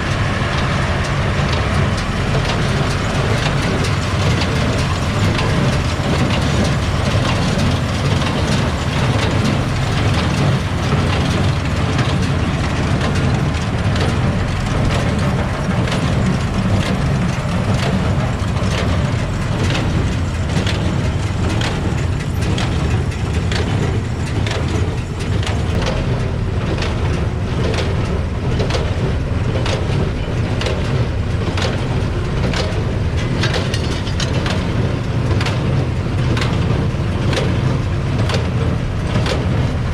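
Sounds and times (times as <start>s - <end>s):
haying machinery knocking: 0.0s - 39.9s
tractor engine running: 0.0s - 39.9s.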